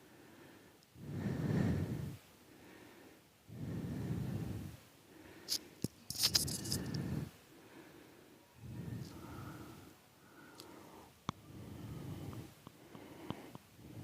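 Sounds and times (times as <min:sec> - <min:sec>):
slow breathing: 0:00.0 - 0:14.0.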